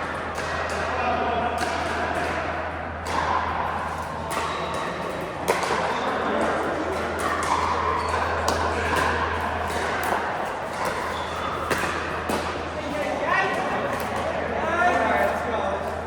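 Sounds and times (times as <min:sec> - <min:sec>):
paddles hitting balls: 0:00.0 - 0:15.0.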